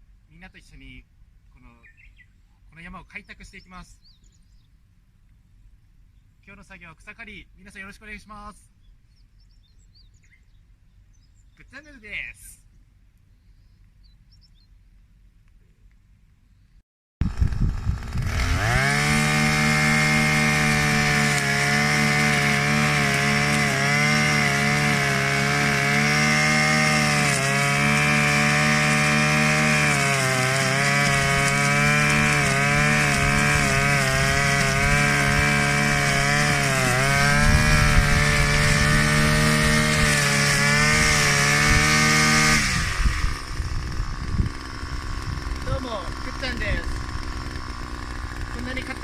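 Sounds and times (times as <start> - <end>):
brush cutter cutting grass: 17.2 - 49.0.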